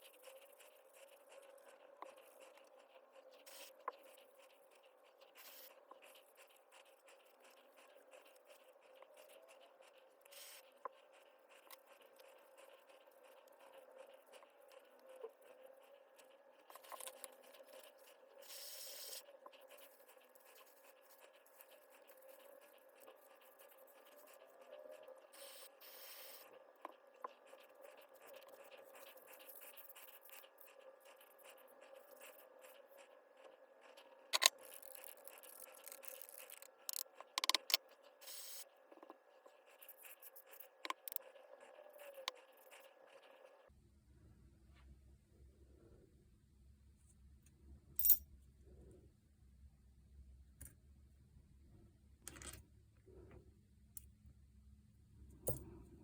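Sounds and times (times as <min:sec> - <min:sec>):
faint steady hum: 0:00.0 - 0:56.0
rubbing and scraping of parts: 0:34.4 - 0:38.6.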